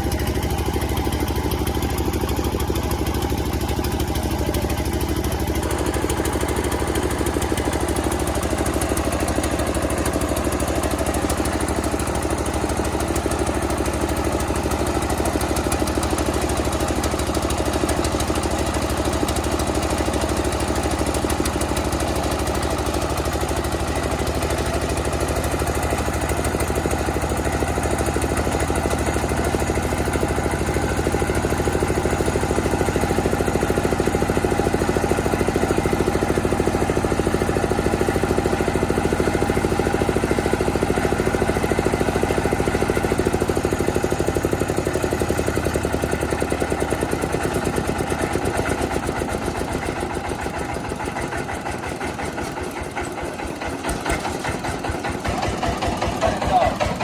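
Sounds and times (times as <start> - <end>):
rice milling machine drone: 0.0 - 57.0.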